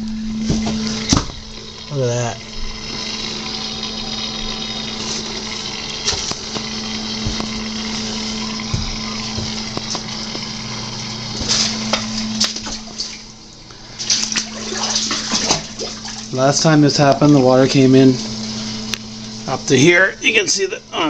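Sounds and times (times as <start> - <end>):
electric pump humming: 0.0 - 21.0
water splashes: 0.4 - 17.5
knocks: 8.6 - 10.4
rushing water: 14.0 - 16.4.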